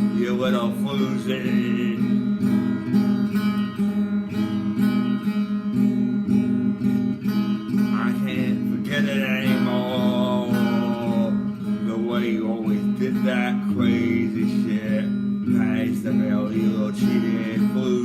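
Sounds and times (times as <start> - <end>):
person singing: 0.0 - 2.9, 7.7 - 18.0
acoustic guitar strumming: 0.0 - 18.0.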